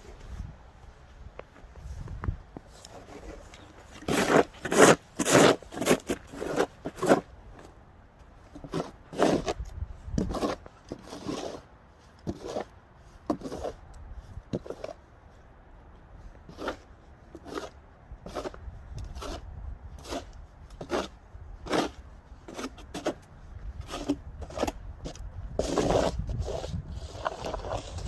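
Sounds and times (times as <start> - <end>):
snow shovel scraping snow: 2.7 - 7.3, 8.6 - 12.7, 13.3 - 13.8, 16.5 - 23.2, 23.8 - 28.0.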